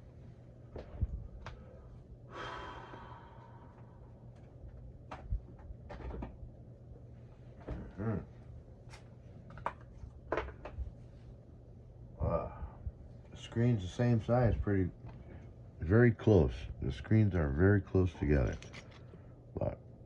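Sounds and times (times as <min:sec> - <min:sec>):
low steady hum: 0:00.0 - 0:20.0
person grunting: 0:07.8 - 0:08.3, 0:12.2 - 0:12.8.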